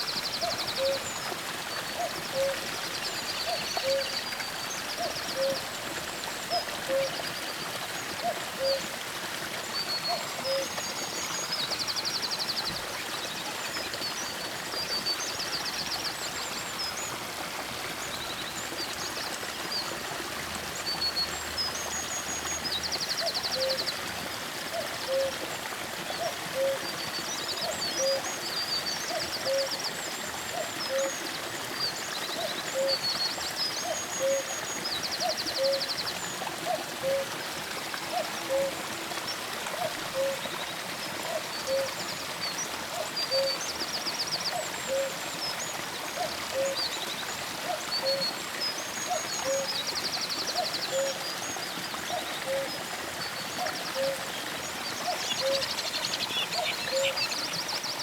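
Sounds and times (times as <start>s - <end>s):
birds singing: 0.0s - 7.3s, 26.1s - 37.3s, 41.3s - 58.0s.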